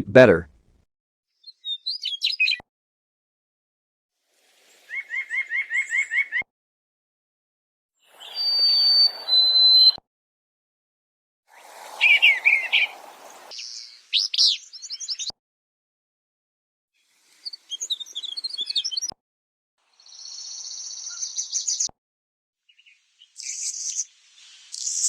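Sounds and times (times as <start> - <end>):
recorded bird chirps and trills: 1.4 - 2.6, 8.1 - 10.0, 11.6 - 15.3, 17.1 - 19.1, 19.9 - 21.9, 22.7 - 25.0.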